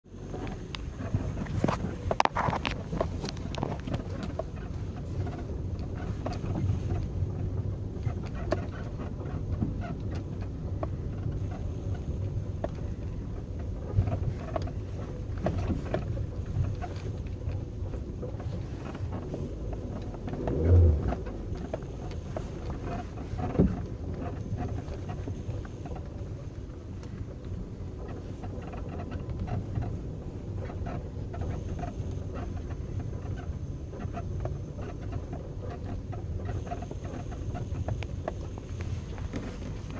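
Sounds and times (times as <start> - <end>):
creaking: 13.8 - 27.3
low rumble: 17.2 - 24.7.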